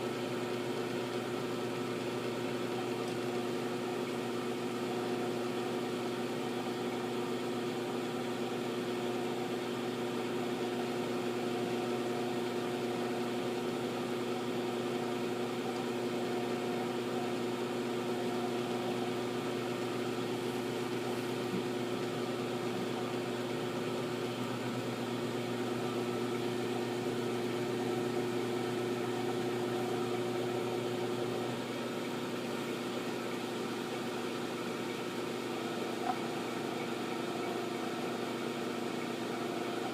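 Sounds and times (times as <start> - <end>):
milling machine humming: 0.0 - 39.9.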